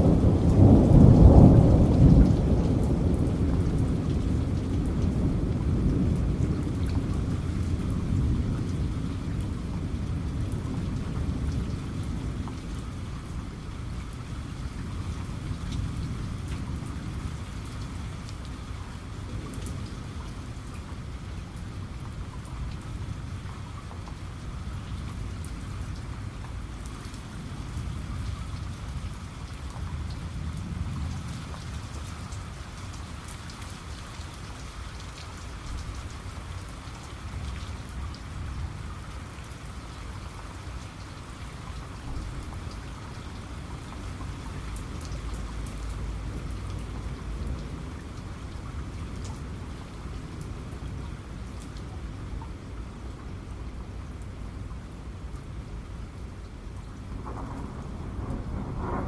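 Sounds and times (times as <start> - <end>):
thunder rumbling: 0.0 - 21.1, 57.1 - 59.0
steady rain falling: 0.0 - 59.0.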